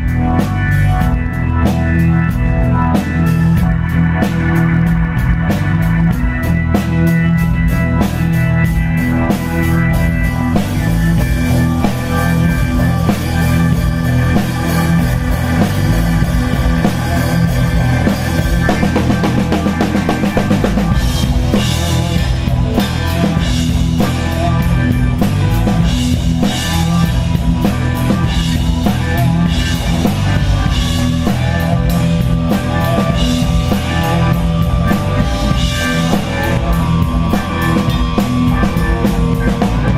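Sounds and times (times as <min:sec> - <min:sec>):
blues-rock band playing: 0:00.0 - 0:39.9.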